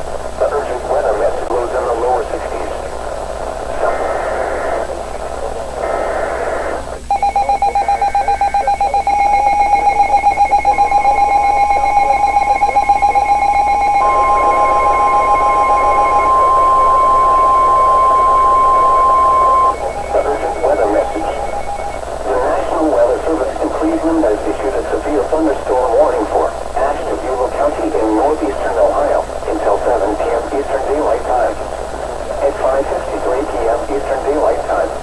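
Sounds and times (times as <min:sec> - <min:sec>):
radio announcer speaking: 0:00.4 - 0:06.2, 0:06.8 - 0:35.0
steady warning alarm tone: 0:07.0 - 0:35.0
rapidly pulsing beep: 0:07.1 - 0:34.6.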